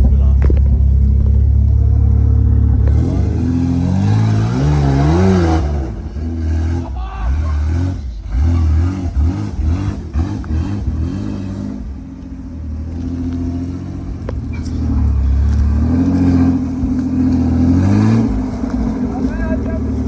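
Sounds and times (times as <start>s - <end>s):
car engine revving: 0.0s - 20.0s.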